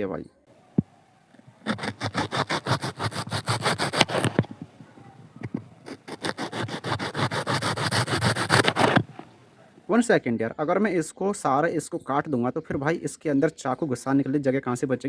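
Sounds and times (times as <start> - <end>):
knife sawing through potato: 1.6 - 4.5, 5.8 - 9.2.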